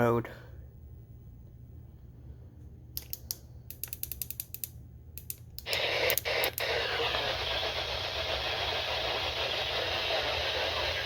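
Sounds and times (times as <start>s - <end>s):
radio static hiss: 5.6s - 11.0s.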